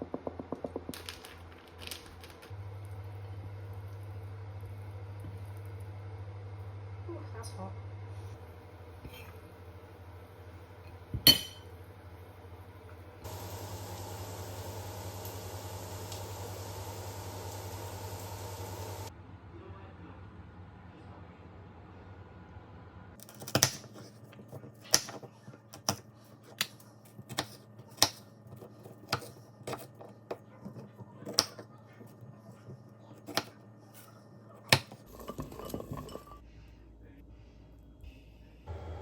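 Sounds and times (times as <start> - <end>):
utensils clinking against dishes: 11.3 - 11.7.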